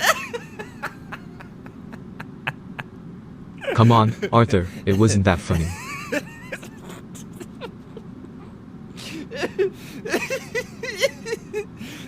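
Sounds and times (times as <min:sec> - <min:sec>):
man laughing uncontrollably: 0:00.0 - 0:02.9, 0:04.9 - 0:11.8.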